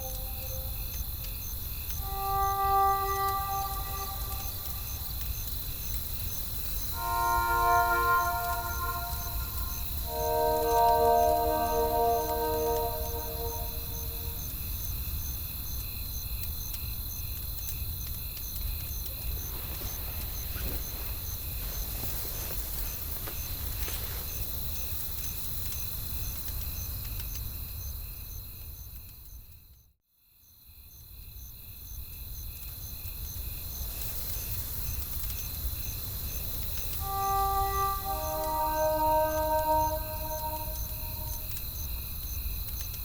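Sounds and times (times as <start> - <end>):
crickets chirping: 0.0 - 14.6, 37.0 - 41.6.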